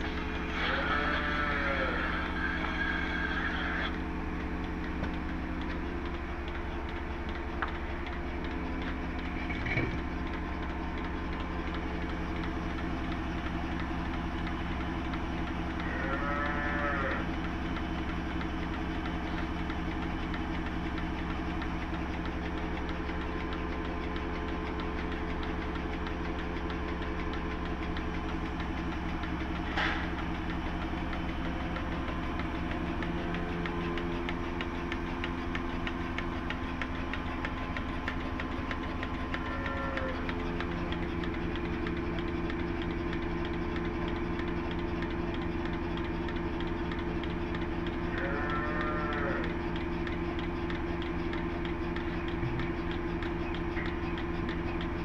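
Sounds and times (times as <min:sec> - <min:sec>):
machine hum: 0:00.0 - 0:55.0
cow mooing: 0:00.5 - 0:03.9, 0:15.8 - 0:17.2, 0:39.3 - 0:40.2, 0:48.1 - 0:49.5.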